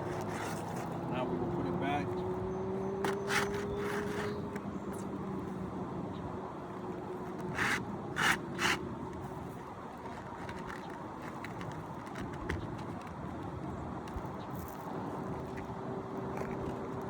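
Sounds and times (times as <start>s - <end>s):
roof shingle scraping: 0.0s - 1.1s, 3.0s - 4.7s, 6.8s - 13.4s.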